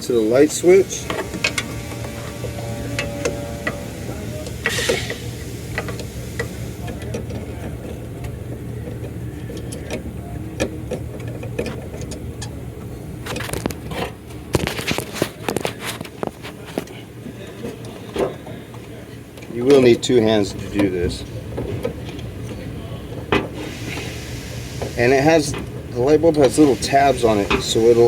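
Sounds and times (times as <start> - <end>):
steady low hum: 0.0 - 17.5.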